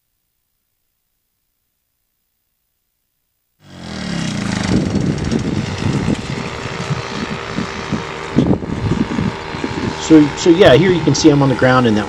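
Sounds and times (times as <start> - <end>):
paramotor engine hum: 3.6 - 12.0
wind buffeting microphone: 3.9 - 12.0.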